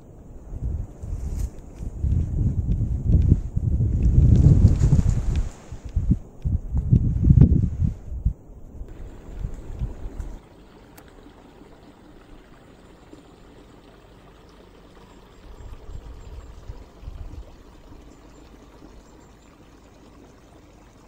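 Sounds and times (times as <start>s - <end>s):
wind rumbling on microphone: 0.0s - 13.3s, 14.8s - 21.0s
running water rushing: 8.9s - 21.0s.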